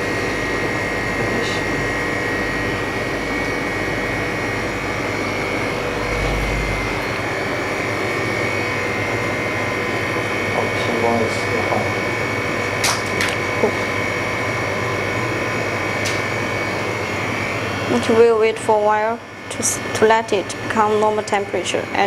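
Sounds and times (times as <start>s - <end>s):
thin high whine: 0.0s - 12.3s
freezer compressor and fan hum: 0.0s - 22.0s
brief low rumble: 5.9s - 7.3s.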